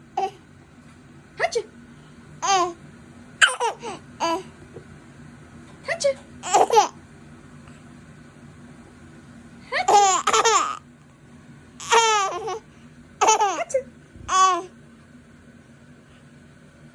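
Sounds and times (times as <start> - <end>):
small child giggling: 13.2 - 13.7.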